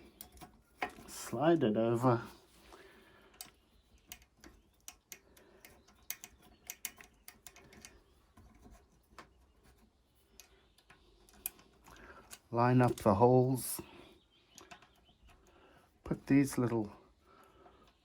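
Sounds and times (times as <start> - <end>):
small metal clicks and taps: 0.0 - 1.2, 3.3 - 13.1, 14.5 - 15.5.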